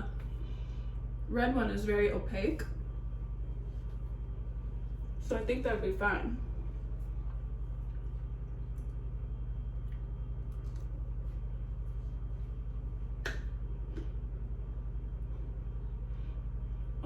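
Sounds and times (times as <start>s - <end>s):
electric massager pulsing hum: 0.0s - 17.0s.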